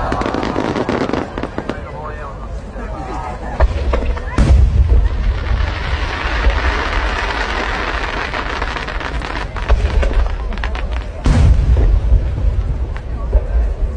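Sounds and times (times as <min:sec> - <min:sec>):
fireworks crackling and popping: 0:00.0 - 0:02.2, 0:03.6 - 0:13.9
deep rumble: 0:03.5 - 0:13.9
firework boom: 0:03.6 - 0:13.9.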